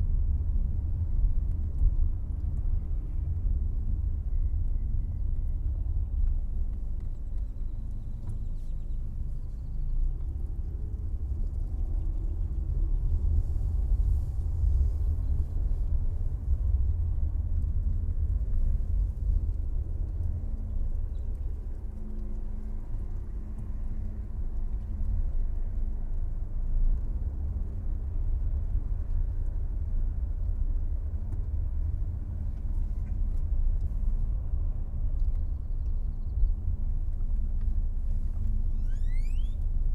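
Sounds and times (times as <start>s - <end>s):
car engine rumble: 0.0s - 39.9s.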